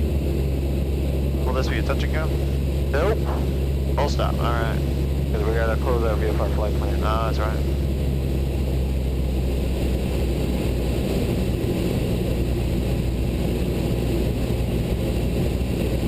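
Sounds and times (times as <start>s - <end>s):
airplane engine and propeller droning: 0.0s - 16.0s.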